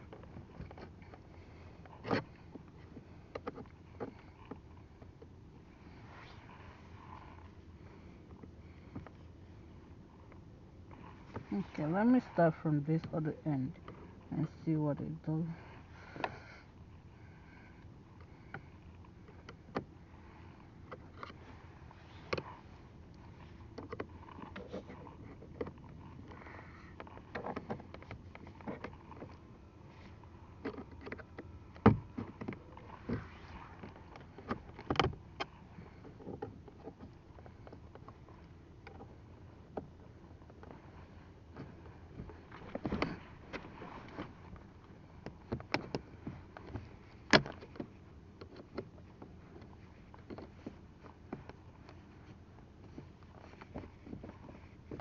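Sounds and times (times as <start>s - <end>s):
tool clicking and scraping plastic: 2.0s - 2.4s, 23.7s - 29.4s, 30.6s - 39.1s.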